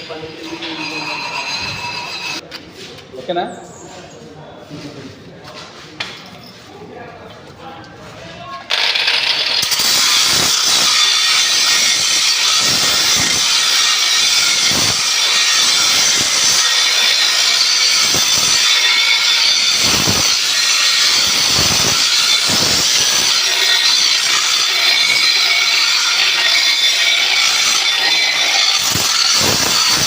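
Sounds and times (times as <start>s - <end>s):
angle grinder grinding metal: 0.0s - 2.4s, 8.7s - 30.0s.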